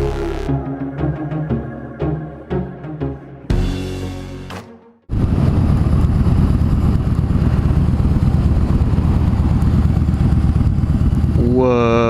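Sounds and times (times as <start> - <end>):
motorcycle engine rumbling: 5.1 - 12.0.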